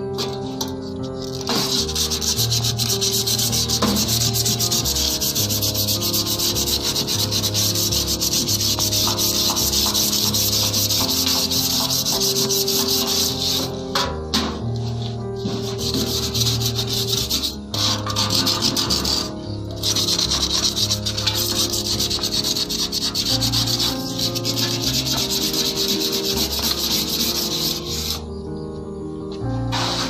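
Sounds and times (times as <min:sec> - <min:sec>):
hand sanding metal bowl: 0:01.2 - 0:13.8, 0:15.4 - 0:28.2, 0:29.7 - 0:30.0.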